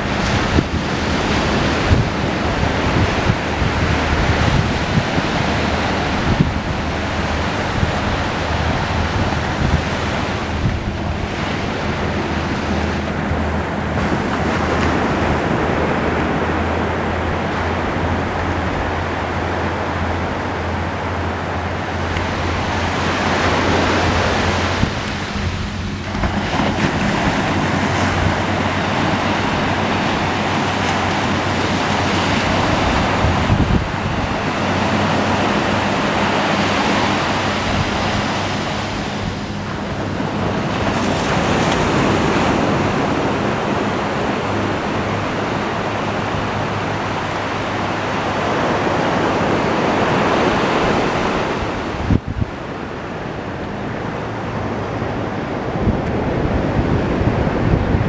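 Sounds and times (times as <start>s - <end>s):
ocean waves washing: 0.0s - 58.0s
wind buffeting microphone: 0.0s - 58.0s.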